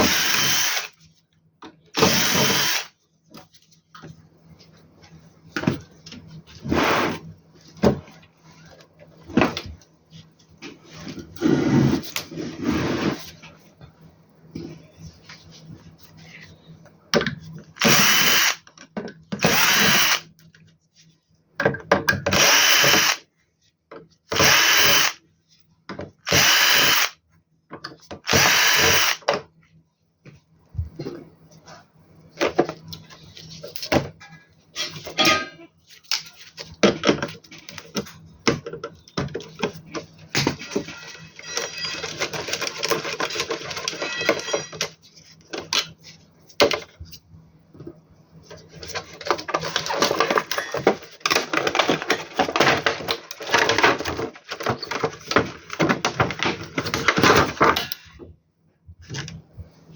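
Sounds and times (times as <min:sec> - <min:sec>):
power screwdriver running: 0:00.0 - 0:00.9, 0:02.0 - 0:02.9, 0:17.8 - 0:18.6, 0:19.4 - 0:20.3, 0:22.3 - 0:23.2, 0:24.4 - 0:25.2, 0:26.3 - 0:27.2, 0:28.3 - 0:29.3
screws and metal parts clattering: 0:40.6 - 0:45.0.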